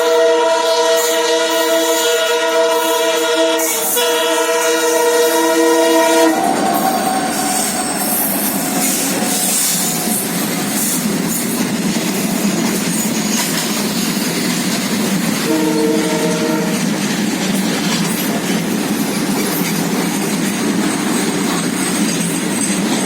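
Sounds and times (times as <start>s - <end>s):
train horn chord: 0.0s - 10.2s, 15.4s - 17.0s
train wheels clattering on rails: 3.5s - 23.0s.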